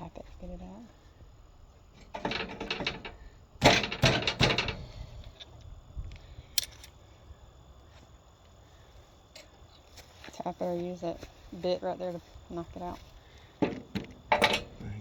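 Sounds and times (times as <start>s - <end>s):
tools tapping on metal: 2.0s - 4.8s, 13.6s - 14.9s.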